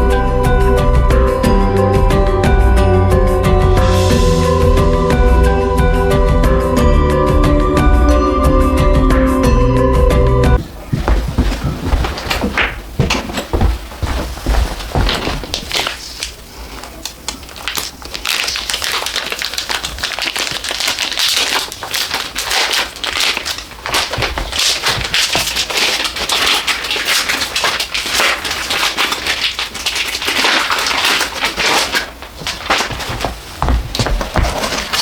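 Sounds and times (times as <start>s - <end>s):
packing material crinkling: 10.6s - 35.0s.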